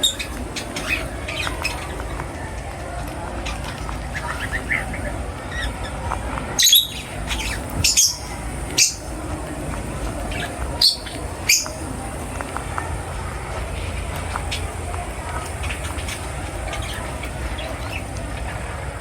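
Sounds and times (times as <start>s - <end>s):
birds chirping softly: 0.0s - 19.0s
low background noise: 0.0s - 19.0s.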